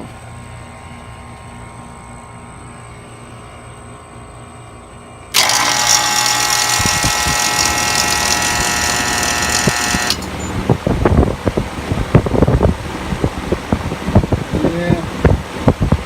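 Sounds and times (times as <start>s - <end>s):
air conditioner hissing whine: 0.0s - 16.0s
compressor clattering and knocking: 5.4s - 11.3s.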